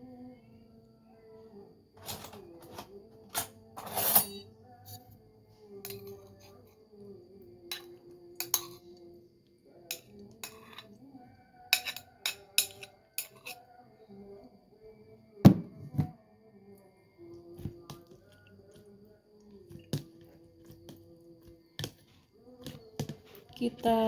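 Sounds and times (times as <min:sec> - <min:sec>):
utensils clinking on glass bowl: 0:02.0 - 0:04.4, 0:07.7 - 0:08.9, 0:09.9 - 0:10.9, 0:11.7 - 0:13.6.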